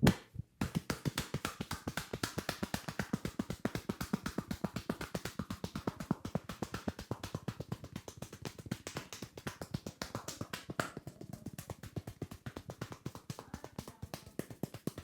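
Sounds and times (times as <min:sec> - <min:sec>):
rhythmic hand slaps: 0:00.0 - 0:15.0.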